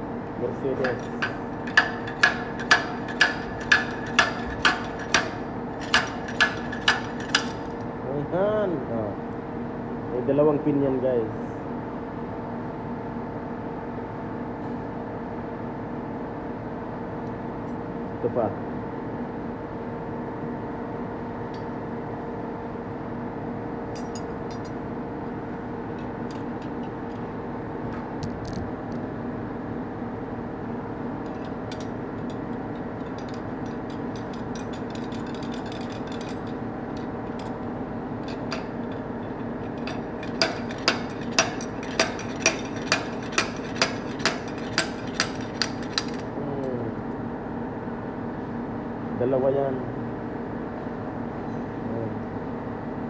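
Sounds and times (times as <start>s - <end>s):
workshop hum: 0.0s - 10.5s, 20.7s - 53.0s
metal tools clicking: 0.8s - 7.8s, 24.0s - 24.8s, 31.3s - 37.6s, 38.2s - 46.3s
metal-on-metal knocks: 0.8s - 7.8s, 31.3s - 37.6s, 38.2s - 46.3s.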